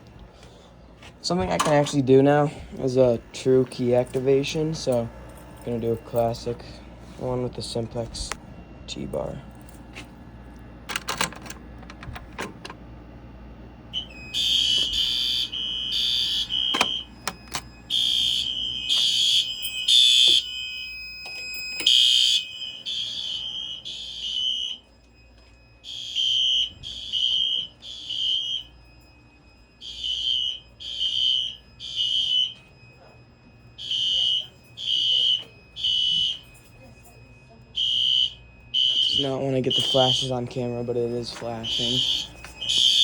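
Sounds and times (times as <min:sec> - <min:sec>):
buzzy fire alarm horn: 0:00.0 - 0:43.0
pull station clicks: 0:10.8 - 0:12.9, 0:16.4 - 0:17.7.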